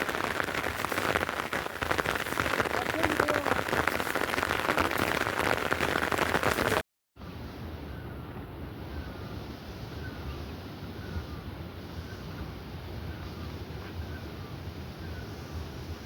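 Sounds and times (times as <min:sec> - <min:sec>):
heavy rain falling: 0:00.0 - 0:06.8.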